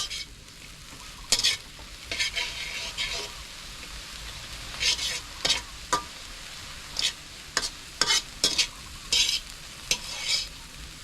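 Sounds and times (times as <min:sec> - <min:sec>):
utensil scraping a frying pan: 0:00.0 - 0:00.4, 0:01.3 - 0:03.4, 0:04.7 - 0:06.1, 0:06.8 - 0:10.6
faint hiss: 0:00.0 - 0:11.0.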